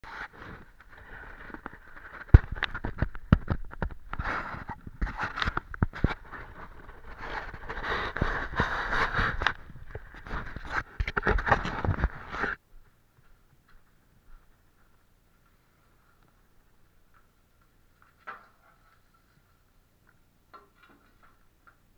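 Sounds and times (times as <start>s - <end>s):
hard objects scraping: 0.0s - 12.6s.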